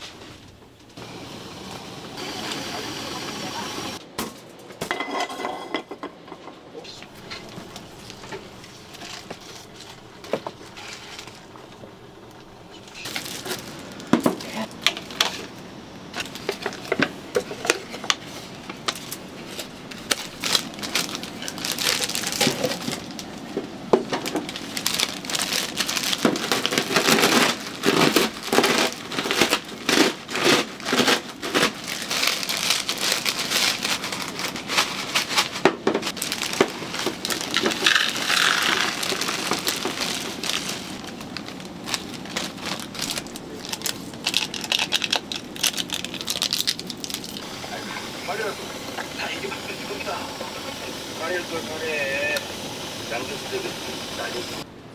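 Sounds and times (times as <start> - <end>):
plastic packaging crinkling: 7.1 - 50.1.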